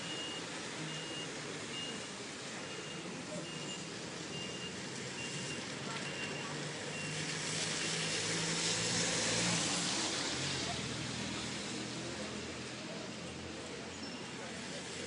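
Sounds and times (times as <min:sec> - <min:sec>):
reversing alarm beeping: 0:00.0 - 0:07.2
traffic on wet street: 0:00.0 - 0:15.0.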